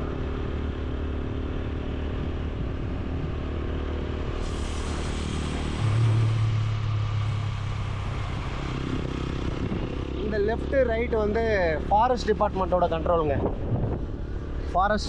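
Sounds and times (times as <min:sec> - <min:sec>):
wind and road noise: 0:00.0 - 0:15.0
motorcycle engine running: 0:05.0 - 0:12.7.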